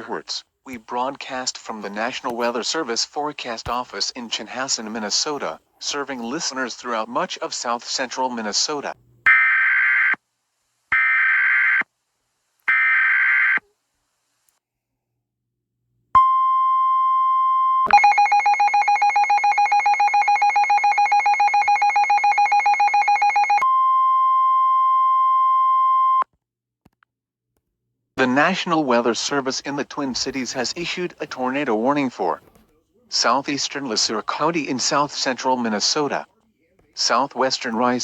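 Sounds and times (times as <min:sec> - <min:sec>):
rapidly pulsing alarm beeps: 0:17.9 - 0:23.6
steady alarm tone: 0:17.9 - 0:23.6.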